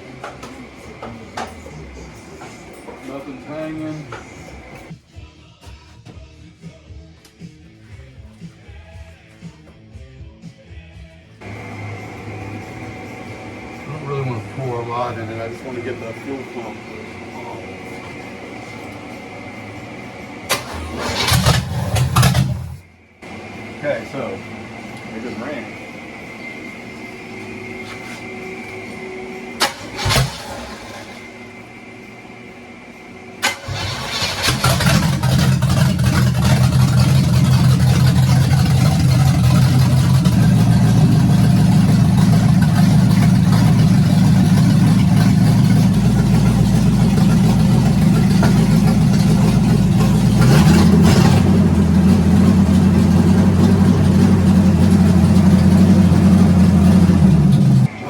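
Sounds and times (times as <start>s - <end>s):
car engine running: 0.0s - 5.0s, 11.4s - 58.0s
car engine cranking: 20.5s - 22.8s, 29.6s - 31.3s, 33.4s - 57.9s.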